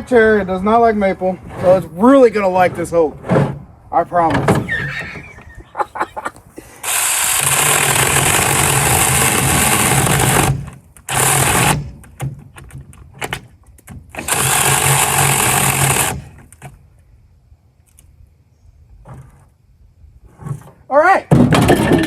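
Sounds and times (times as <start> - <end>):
electric chainsaw cutting wood: 6.8 - 11.9, 14.2 - 16.4.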